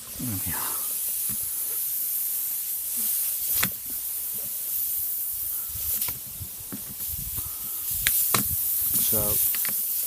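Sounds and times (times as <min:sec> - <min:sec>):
air hissing out of tyre: 0:00.0 - 0:10.0.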